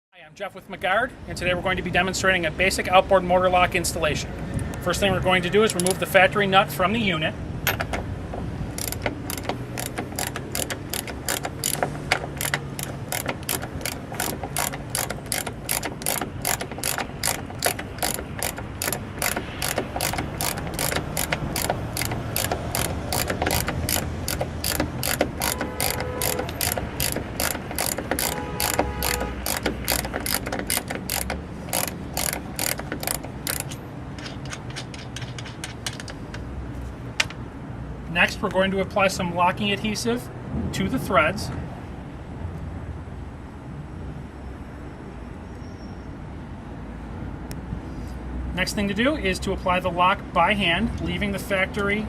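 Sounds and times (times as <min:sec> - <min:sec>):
ratchet wrench clicking: 0:05.7 - 0:06.0, 0:07.7 - 0:36.5.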